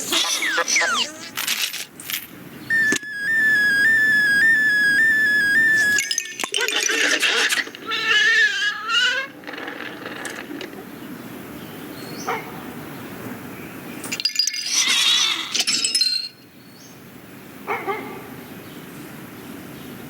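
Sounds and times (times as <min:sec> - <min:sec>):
wavering high squeal: 0:00.0 - 0:01.4, 0:02.7 - 0:06.6
pitched call: 0:00.0 - 0:01.5, 0:02.7 - 0:06.7
short squeak: 0:00.0 - 0:01.6, 0:02.7 - 0:06.4.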